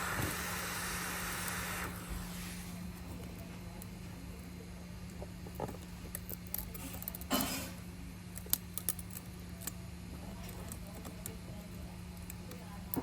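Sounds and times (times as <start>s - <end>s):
low electrical hum: 0.0s - 13.0s
small tools clicking and tapping: 5.2s - 7.5s, 8.3s - 9.8s.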